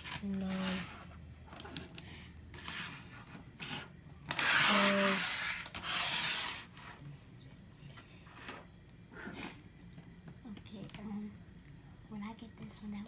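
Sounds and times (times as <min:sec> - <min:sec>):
plastic rubbing and scraping: 0:00.0 - 0:01.9, 0:02.5 - 0:07.1.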